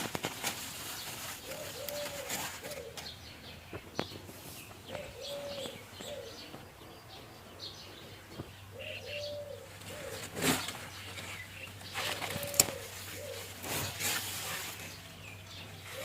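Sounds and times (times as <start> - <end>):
loud rustle: 0.0 - 3.0, 9.7 - 16.0
small birds chirping: 0.4 - 16.0
dove cooing: 1.0 - 14.9, 15.6 - 16.0.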